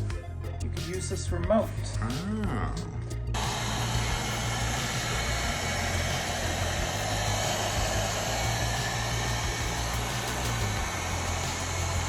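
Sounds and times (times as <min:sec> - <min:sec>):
robot vacuum whirring: 0:03.4 - 0:12.0.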